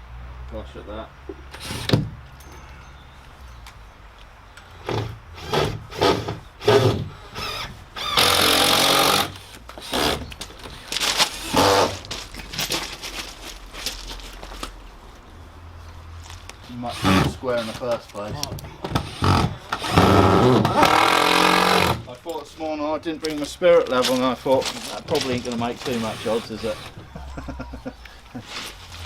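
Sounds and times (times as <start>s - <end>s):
power tool running: 1.6s - 2.0s, 4.8s - 10.8s, 19.0s - 22.0s, 25.8s - 27.0s.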